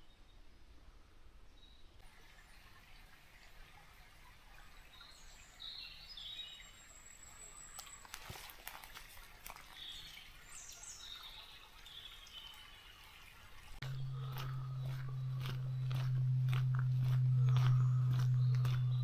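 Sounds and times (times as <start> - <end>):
songbirds chirping and whistling: 9.7 - 19.0.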